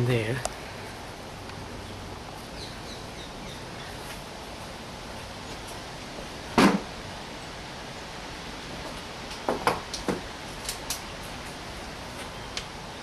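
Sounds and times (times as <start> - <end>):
faint bird chirps: 2.6 - 4.0
sharp knock: 6.6 - 6.9.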